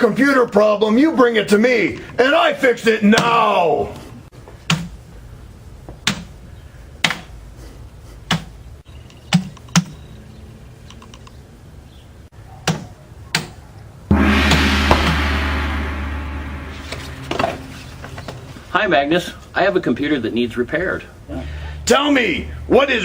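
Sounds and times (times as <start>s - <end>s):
loud sustained low hum: 14.1s - 18.7s, 21.3s - 23.0s.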